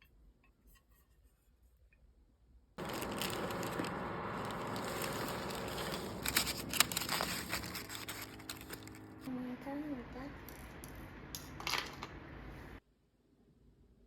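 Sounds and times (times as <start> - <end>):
crinkling rustling handling noise: 2.8 - 9.3.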